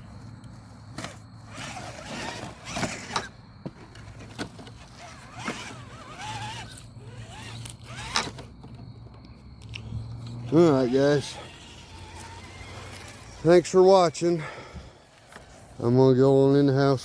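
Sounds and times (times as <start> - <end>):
tires and chassis clicking and scraping: 0.0 - 17.0
electric motor and gears whining: 0.8 - 9.0, 9.6 - 14.3.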